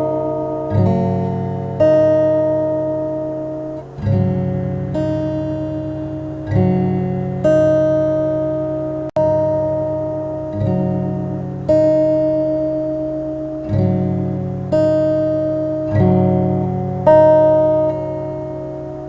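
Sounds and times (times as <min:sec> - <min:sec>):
acoustic guitar strumming chords: 0:00.0 - 0:19.0.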